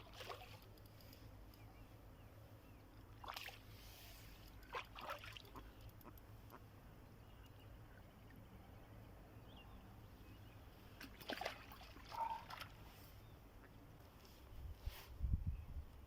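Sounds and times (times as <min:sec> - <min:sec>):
short noisy splashes: 0:03.2 - 0:03.8, 0:04.7 - 0:05.6, 0:11.0 - 0:12.8.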